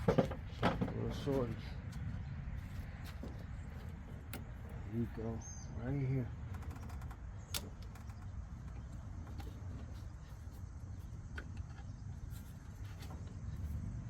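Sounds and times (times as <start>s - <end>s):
low steady rumble: 0.0s - 14.0s.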